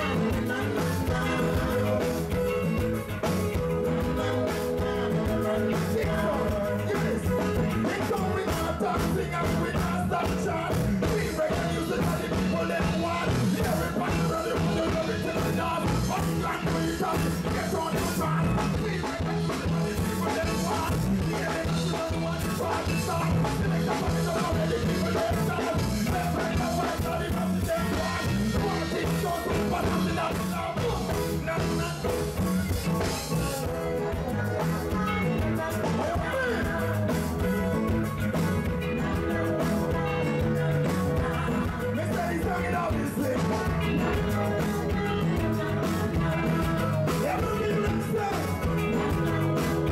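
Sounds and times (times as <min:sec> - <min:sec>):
live reggae band playing: 0:00.0 - 0:49.9.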